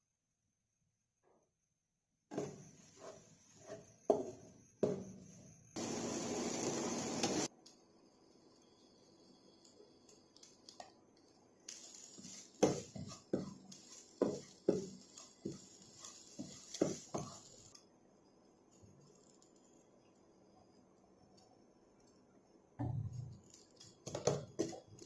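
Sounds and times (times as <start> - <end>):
steady hiss: 2.3 - 7.5, 8.3 - 17.8.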